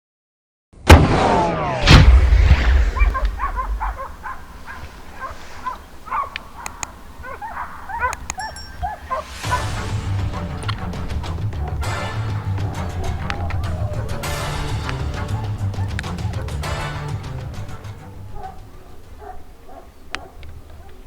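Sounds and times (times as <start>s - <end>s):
loud bang with rumble: 0.9s - 5.1s
dogs yelping: 2.9s - 9.9s, 11.2s - 21.0s
music with low beat: 9.5s - 18.0s.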